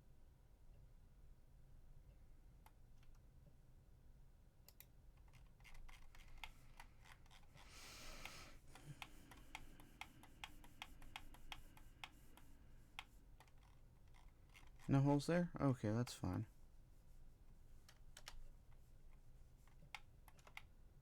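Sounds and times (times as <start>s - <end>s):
mouse and keyboard clicking: 4.7s - 14.9s, 17.8s - 18.4s, 19.1s - 20.7s.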